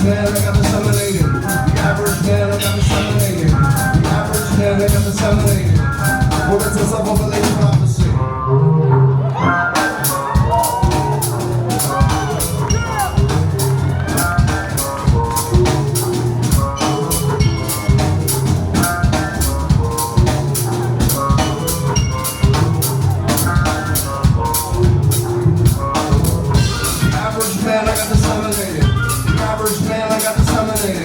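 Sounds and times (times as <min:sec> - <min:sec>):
drum kit beat: 0:00.0 - 0:08.3, 0:09.7 - 0:31.0
bass line: 0:00.0 - 0:31.0
short high-pitched notes: 0:09.5 - 0:27.7.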